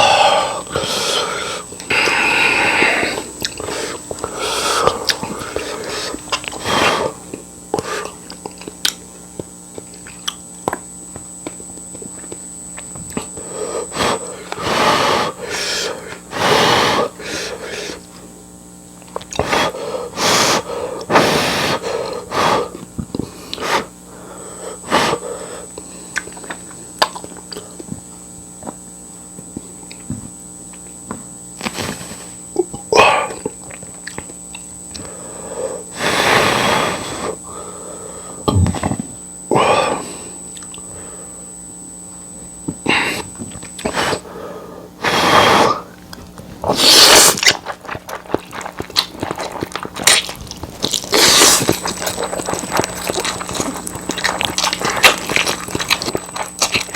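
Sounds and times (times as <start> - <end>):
loud slurping and breathing: 0.0 - 8.6, 13.2 - 18.2, 19.2 - 26.7, 31.6 - 32.4, 34.9 - 41.5, 42.8 - 56.9
faint steady hum: 0.0 - 56.9.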